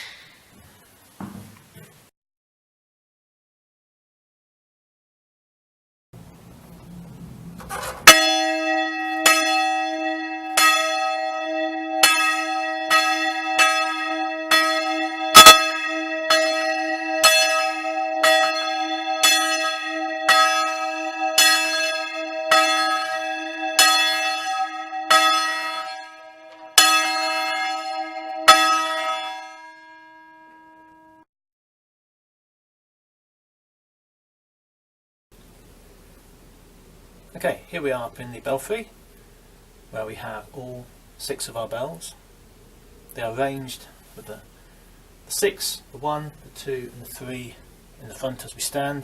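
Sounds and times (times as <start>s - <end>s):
church bell ringing: 7.6s - 31.3s.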